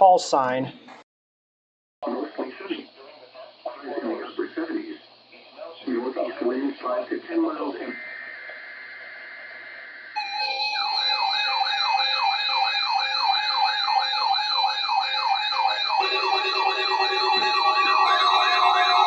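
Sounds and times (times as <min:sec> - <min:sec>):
warbling electronic siren: 0:07.9 - 0:19.0
steady electronic tones: 0:14.8 - 0:19.0
lower electronic tone: 0:15.6 - 0:19.0.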